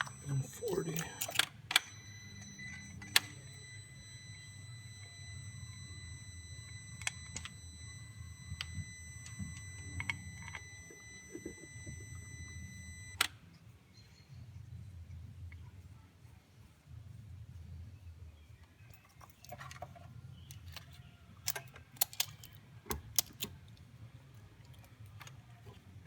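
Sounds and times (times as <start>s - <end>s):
low hum: 0.0s - 13.2s
steady high electronic tone: 0.0s - 13.2s.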